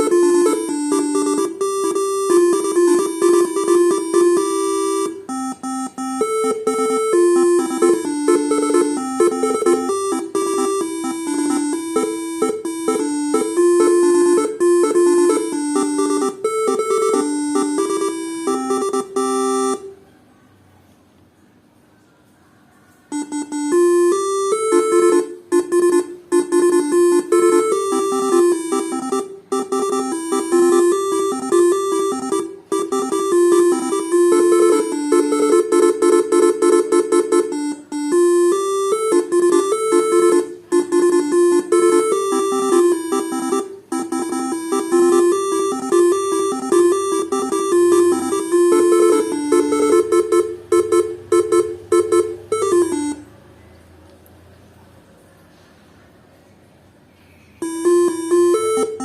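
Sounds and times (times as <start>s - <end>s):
multi-tone horn melody: 0.0s - 20.0s, 23.1s - 53.3s, 57.6s - 59.0s.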